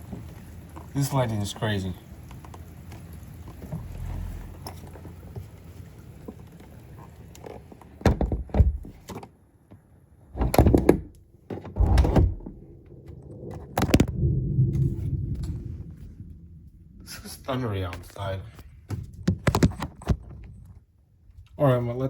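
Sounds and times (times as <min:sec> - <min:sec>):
low rumble: 0:03.4 - 0:05.8, 0:11.8 - 0:18.9
sharp knocks and thumps: 0:10.4 - 0:12.7.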